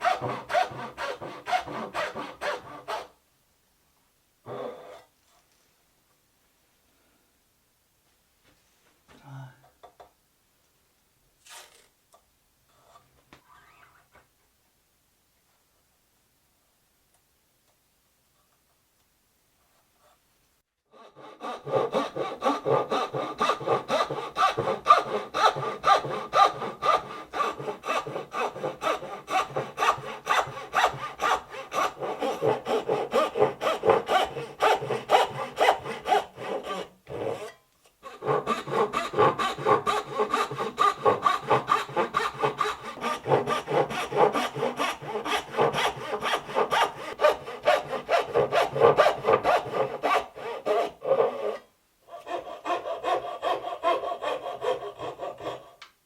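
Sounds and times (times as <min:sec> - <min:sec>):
hand saw cutting wood: 0:00.0 - 0:03.2, 0:20.9 - 0:55.9.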